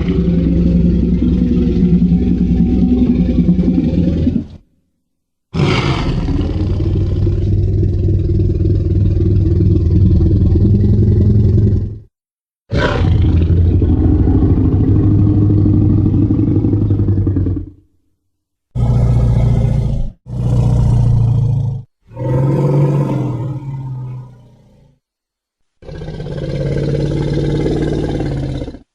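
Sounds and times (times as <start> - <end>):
monster roar: 5.6 - 11.9, 12.7 - 17.7.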